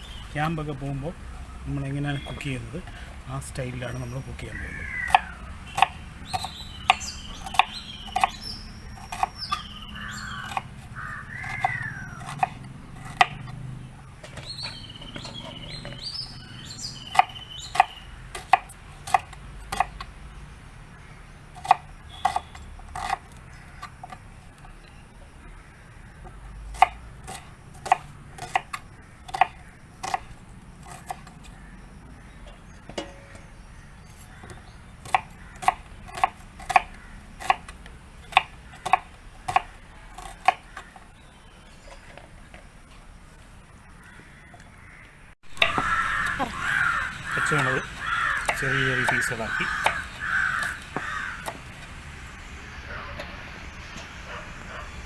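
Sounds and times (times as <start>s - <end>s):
birds chirping: 0.0s - 55.0s
knife chopping on cutting board: 34.4s - 37.7s.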